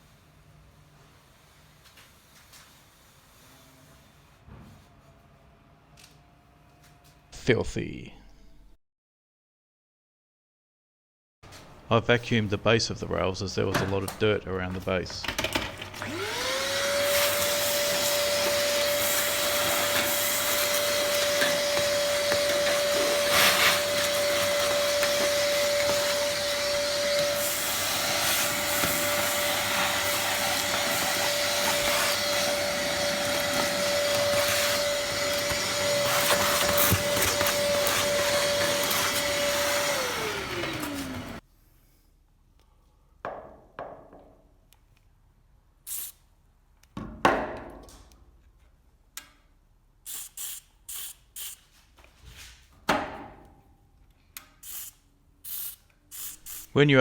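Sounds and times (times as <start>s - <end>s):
vacuum cleaner running: 15.3s - 41.4s.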